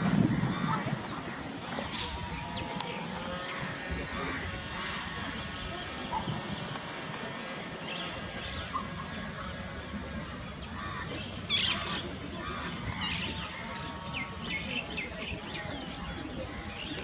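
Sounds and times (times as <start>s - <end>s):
birds chirping: 0.0s - 17.0s
low outdoor rumble: 0.0s - 17.0s.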